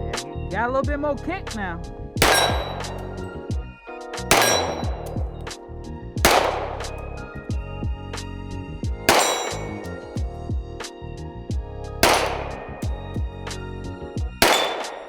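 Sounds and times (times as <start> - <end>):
background music: 0.0 - 15.0
pistol shots ringing out: 2.2 - 3.4, 4.3 - 5.4, 6.3 - 7.3, 9.1 - 10.2, 12.0 - 13.4, 14.4 - 15.0.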